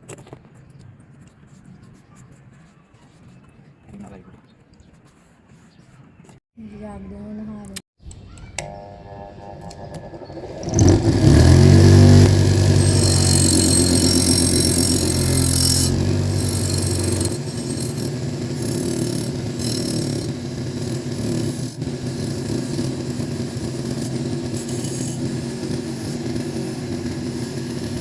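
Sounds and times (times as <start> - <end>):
power tool scraping metal: 8.6 - 28.0.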